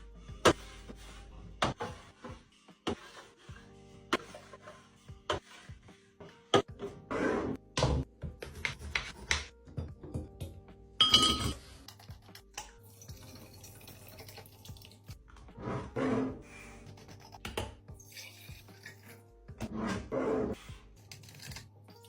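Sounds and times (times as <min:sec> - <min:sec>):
background music: 0:00.0 - 0:22.0
dishes knocking and clinking: 0:07.8 - 0:11.6.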